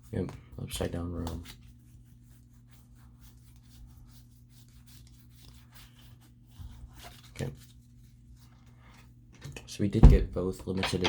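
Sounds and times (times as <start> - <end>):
steady low hum: 10.0 - 11.0.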